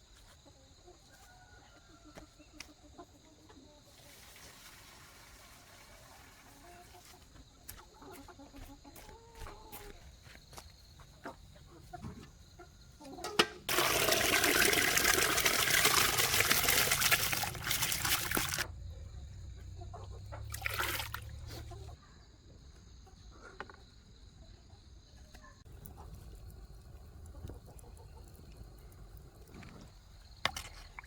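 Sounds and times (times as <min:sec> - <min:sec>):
chickens clucking: 0:06.5 - 0:10.1, 0:11.0 - 0:13.4, 0:17.6 - 0:20.6, 0:21.3 - 0:22.0, 0:27.0 - 0:28.8
water gushing: 0:13.7 - 0:18.7, 0:20.5 - 0:21.3
water splash: 0:13.7 - 0:18.7, 0:20.5 - 0:21.4.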